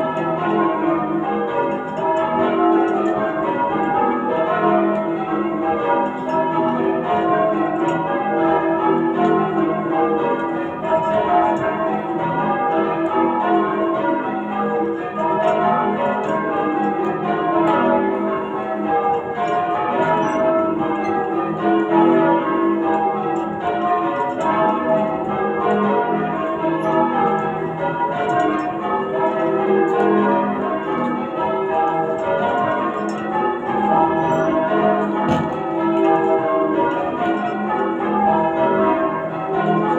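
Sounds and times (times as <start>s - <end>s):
church bells ringing changes: 0.0s - 39.9s.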